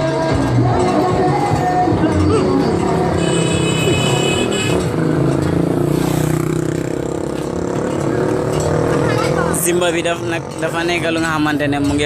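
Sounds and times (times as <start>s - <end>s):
street noise: 0.0s - 12.0s
engine humming: 0.3s - 11.2s.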